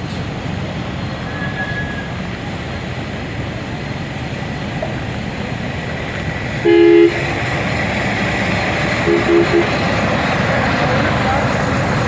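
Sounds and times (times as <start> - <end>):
truck engines and highway traffic: 0.0 - 12.0
vehicle horn honking: 6.6 - 7.3, 9.0 - 10.0.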